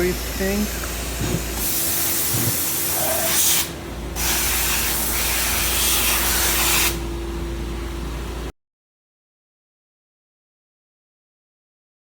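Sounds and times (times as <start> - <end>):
steady machine hum: 0.0 - 8.5
loud hiss bursts: 1.0 - 7.0.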